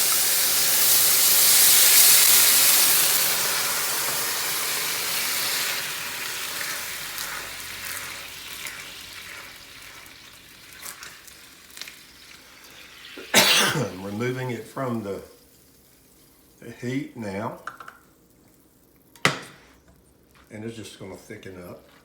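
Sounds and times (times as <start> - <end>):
vinegar sizzling in frying pan: 0.0 - 22.0
small crackles: 6.6 - 13.2, 17.5 - 20.6.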